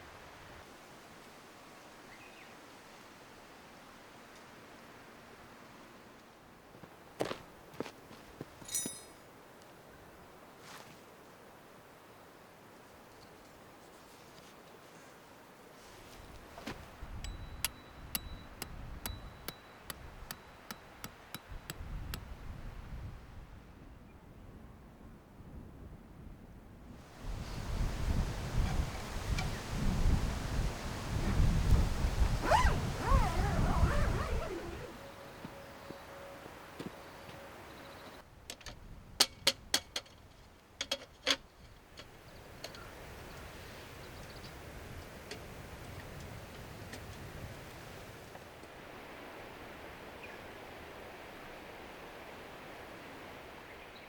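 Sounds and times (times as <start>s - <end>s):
hammer striking metal: 17.2s - 21.8s.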